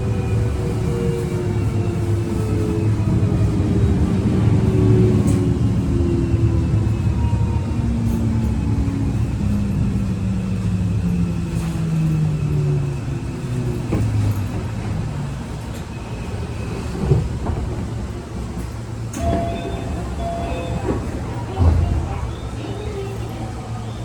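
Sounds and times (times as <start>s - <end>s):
train traction motor hum: 18.5s - 24.0s.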